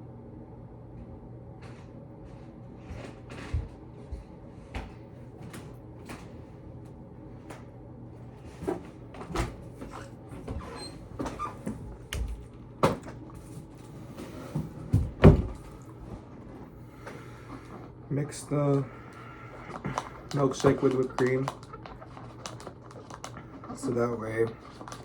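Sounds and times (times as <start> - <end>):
objects knocking and clicking: 19.5 - 23.9.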